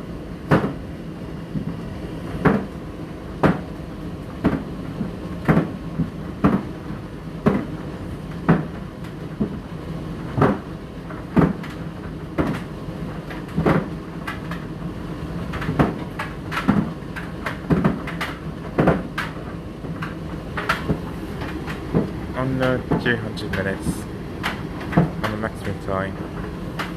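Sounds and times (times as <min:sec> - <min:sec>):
dryer motor and fan hum: 0:00.0 - 0:26.9
load thudding in dryer drum: 0:04.4 - 0:06.7, 0:10.3 - 0:12.7, 0:13.3 - 0:14.5, 0:15.5 - 0:25.4.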